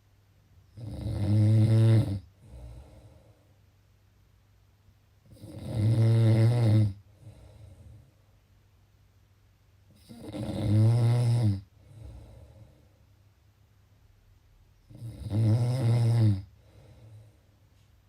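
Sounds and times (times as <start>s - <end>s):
person snoring: 0.8s - 3.3s, 5.3s - 8.0s, 10.0s - 12.8s, 14.9s - 17.3s.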